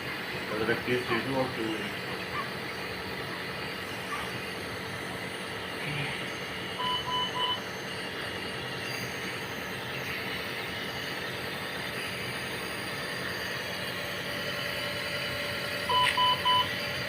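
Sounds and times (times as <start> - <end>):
short electronic beeps: 6.8 - 7.7, 15.9 - 16.7.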